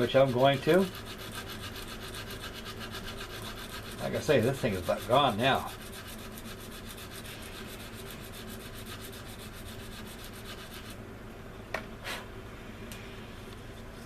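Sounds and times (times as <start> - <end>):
sanding stick rubbing plastic: 0.0 - 11.0.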